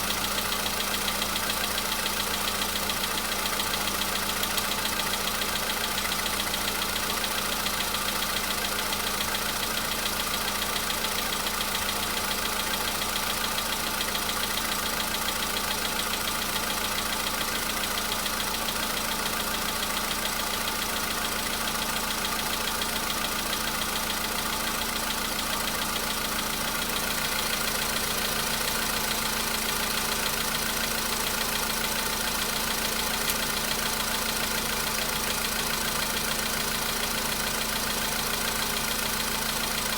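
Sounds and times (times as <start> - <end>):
car engine idling: 0.0 - 39.9
light engine tapping: 28.6 - 36.6.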